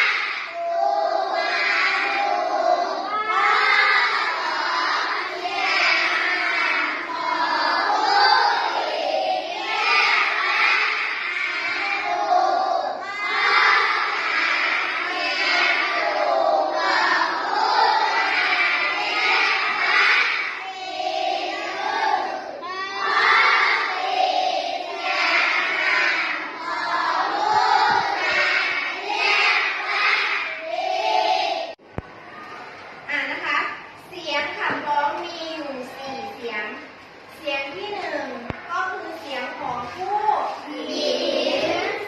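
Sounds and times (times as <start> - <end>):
children singing in unison: 0.0 - 31.8, 40.6 - 42.0.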